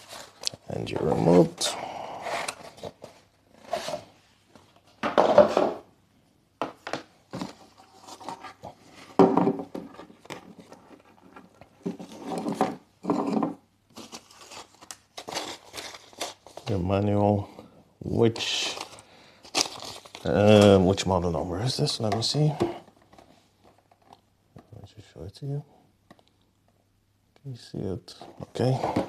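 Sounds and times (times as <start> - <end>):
packaging rustling and rubbing: 13.9 - 16.9, 18.3 - 21.0.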